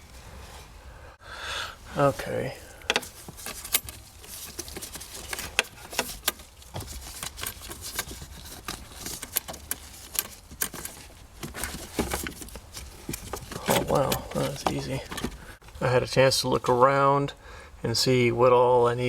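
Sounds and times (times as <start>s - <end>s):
hands handling parts clicking: 2.7s - 15.6s.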